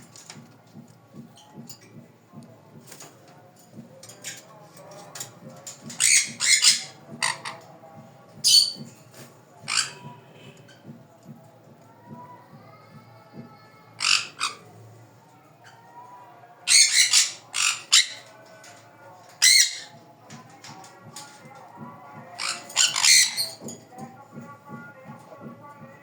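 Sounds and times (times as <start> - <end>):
parrots squawking: 5.9 - 7.6, 9.7 - 10.0, 14.0 - 14.6, 16.7 - 18.3, 19.4 - 20.0, 22.4 - 23.6.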